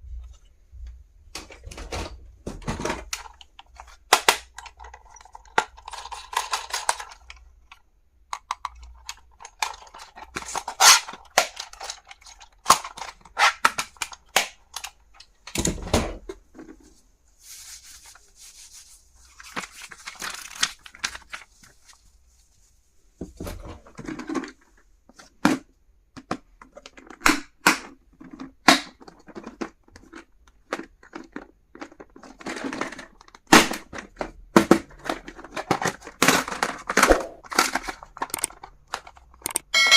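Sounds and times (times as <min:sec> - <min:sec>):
clicks and taps of small items: 0:02.4 - 0:16.8, 0:24.0 - 0:39.7
packaging crinkling and tearing: 0:19.3 - 0:21.9.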